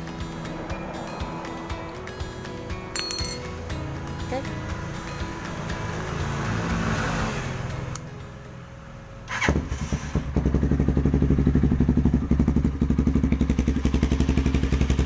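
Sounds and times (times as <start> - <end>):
motorcycle engine idling: 9.3 - 15.0.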